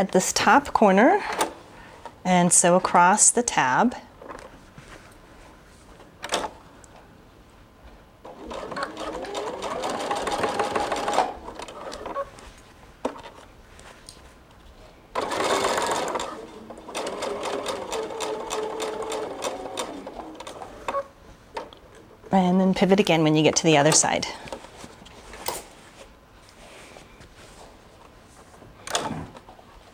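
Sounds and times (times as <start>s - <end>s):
sewing machine stitching: 8.3s - 12.3s, 15.2s - 21.1s.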